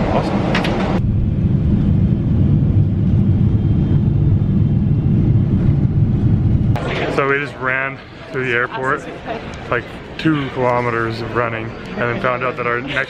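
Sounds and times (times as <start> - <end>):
aircraft cabin rumble: 0.0 - 7.2.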